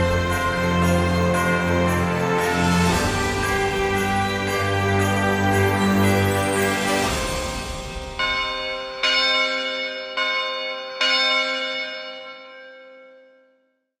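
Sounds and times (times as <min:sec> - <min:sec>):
bell chimes ringing: 0:00.0 - 0:13.4.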